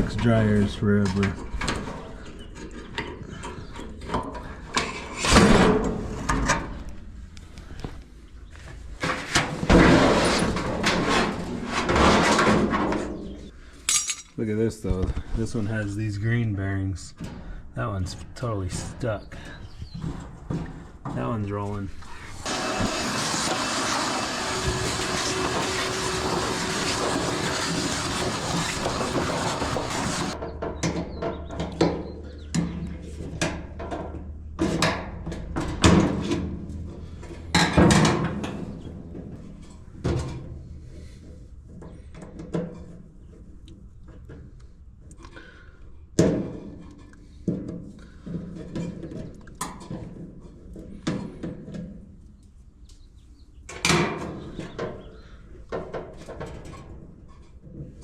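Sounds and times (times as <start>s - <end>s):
metal dryer parts clunking: 9.0s - 14.4s, 37.5s - 40.6s.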